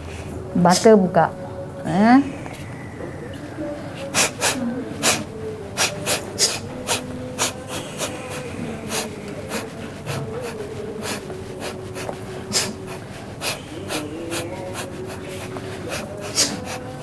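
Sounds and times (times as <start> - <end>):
person sniffing: 4.0 - 16.8.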